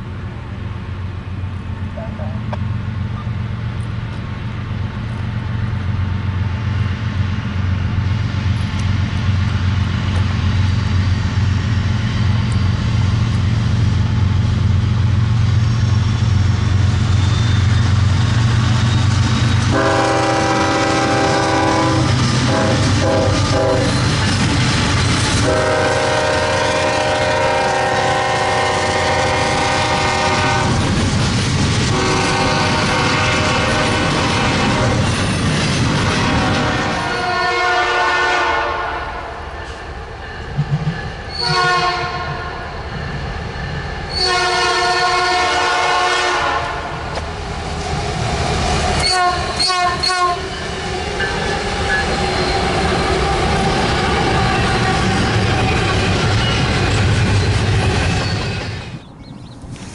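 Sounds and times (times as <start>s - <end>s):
locomotive engine rumbling: 0.0s - 59.9s
train horn blasts: 19.7s - 24.0s, 25.4s - 30.8s, 31.9s - 35.1s, 36.2s - 39.4s, 41.3s - 42.6s, 44.1s - 47.0s, 49.0s - 52.1s.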